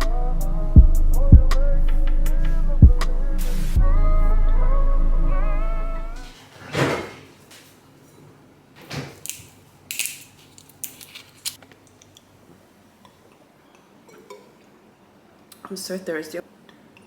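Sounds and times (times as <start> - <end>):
background music: 0.0 - 6.3
objects being handled: 9.0 - 12.2.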